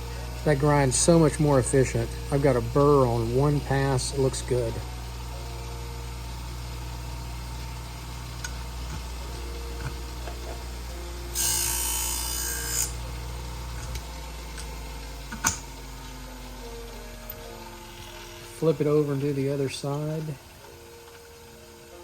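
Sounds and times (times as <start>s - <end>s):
sharpener motor humming: 5.1s - 18.6s
sharp click: 15.3s - 15.7s.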